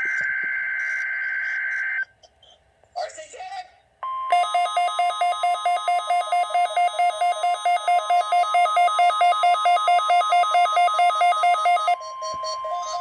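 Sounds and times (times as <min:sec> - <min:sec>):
steady alarm tone: 0:04.3 - 0:12.0.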